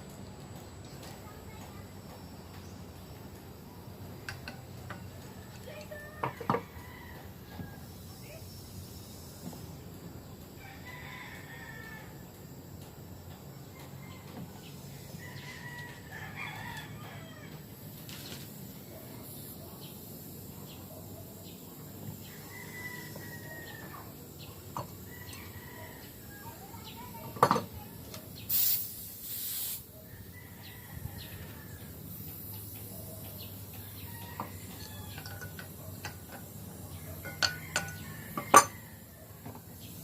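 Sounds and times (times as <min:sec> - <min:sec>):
short hiss: 0:28.5 - 0:29.9
sharp metallic clinks: 0:34.3 - 0:38.8.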